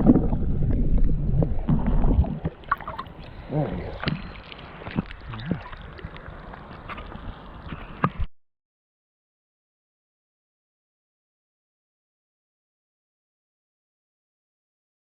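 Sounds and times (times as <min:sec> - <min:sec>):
low rumble: 0:00.0 - 0:02.4
stream water splashing and gurgling: 0:00.0 - 0:08.3.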